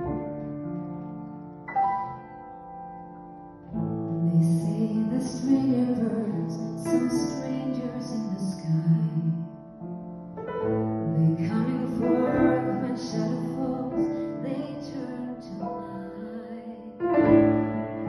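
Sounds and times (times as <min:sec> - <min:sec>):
gentle piano: 0:00.0 - 0:18.0
woman singing: 0:04.2 - 0:09.6, 0:11.1 - 0:17.2.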